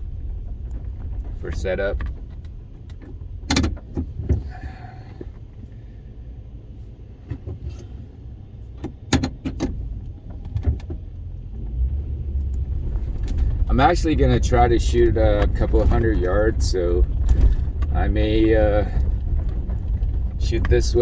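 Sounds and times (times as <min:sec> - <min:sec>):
vehicle engine rumbling: 0:00.0 - 0:21.0
sharp clicks and knocks: 0:00.4 - 0:04.4, 0:08.8 - 0:11.8.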